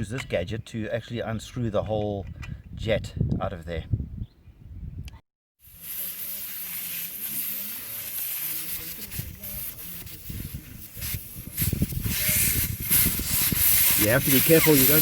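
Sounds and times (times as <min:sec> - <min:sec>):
air hissing out of tyre valve: 0:05.6 - 0:15.0.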